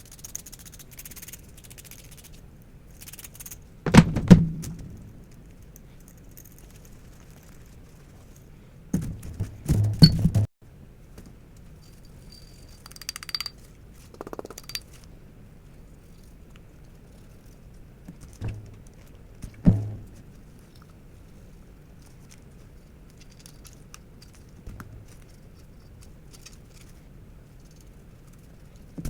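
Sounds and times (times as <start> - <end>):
parts knocking when set down: 3.9 - 5.4, 8.9 - 10.5, 18.4 - 20.3
pistol parts clacking: 12.8 - 13.6
metallic rattling: 19.5 - 20.4.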